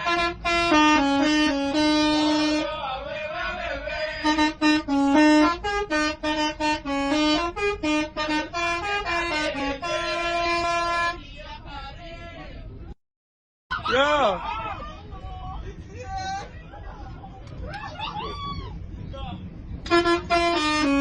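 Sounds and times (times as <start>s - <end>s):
bus musical air horn: 0.0s - 11.6s, 19.8s - 21.0s.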